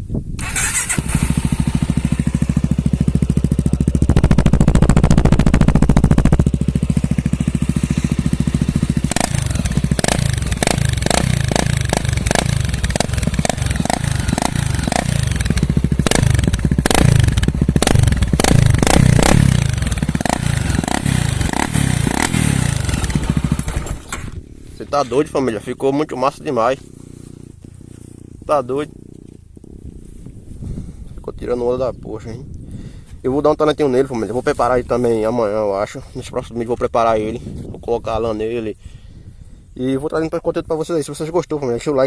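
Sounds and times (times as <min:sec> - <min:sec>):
motorcycle engine idling and revving: 0:00.4 - 0:31.8.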